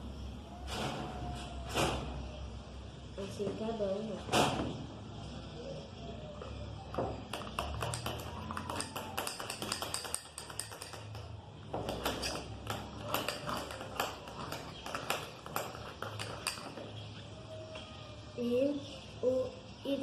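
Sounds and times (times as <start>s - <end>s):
spoon tapping and scraping bowl: 7.2s - 17.1s.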